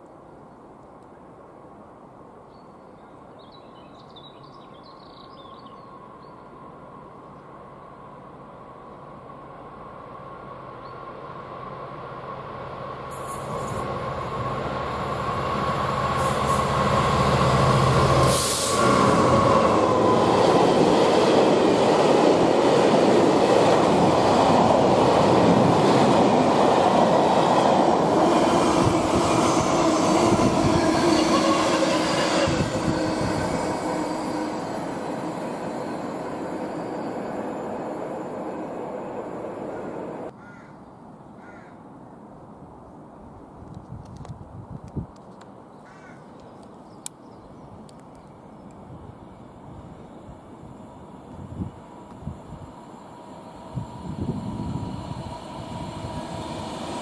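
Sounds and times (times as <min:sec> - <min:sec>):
train passing at speed: 0:04.0 - 0:40.4, 0:48.3 - 0:57.0.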